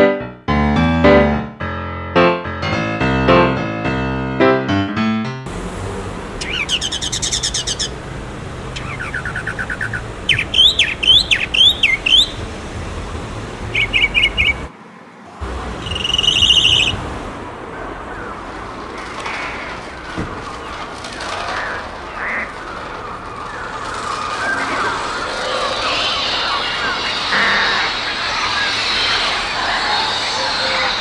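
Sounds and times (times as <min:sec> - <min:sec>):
bird trills and chirps: 0:06.4 - 0:08.0, 0:08.7 - 0:12.5, 0:13.7 - 0:14.7, 0:15.8 - 0:17.0.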